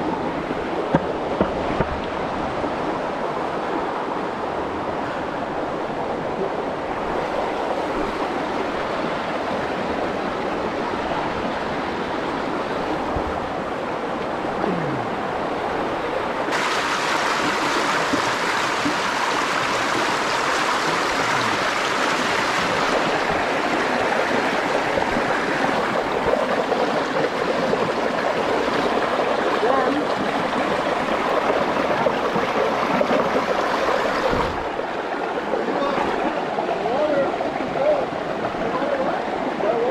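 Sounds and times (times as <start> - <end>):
rushing river water: 0.0 - 39.9.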